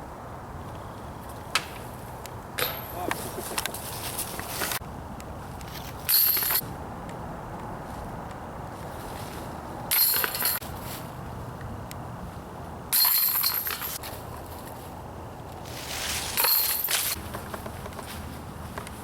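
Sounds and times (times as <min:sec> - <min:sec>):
discs hitting metal chains: 0:02.6 - 0:03.1, 0:06.1 - 0:06.6, 0:09.9 - 0:10.6, 0:12.9 - 0:14.0, 0:16.4 - 0:17.2.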